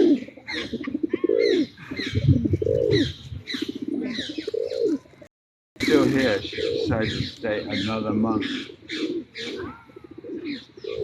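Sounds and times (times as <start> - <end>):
pigeons cooing: 0.0 - 11.0
small birds chirping: 0.1 - 5.2, 5.8 - 11.0.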